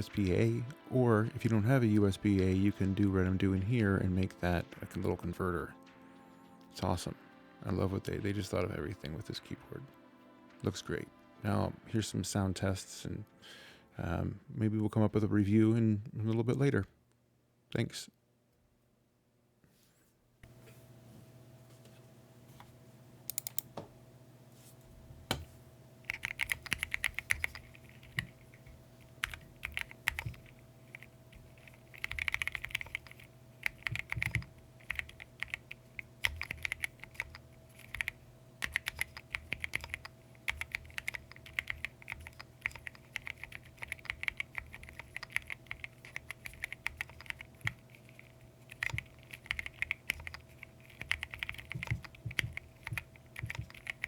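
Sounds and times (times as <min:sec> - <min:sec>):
mechanical keyboard typing: 0:23.3 - 0:23.7, 0:26.1 - 0:54.0.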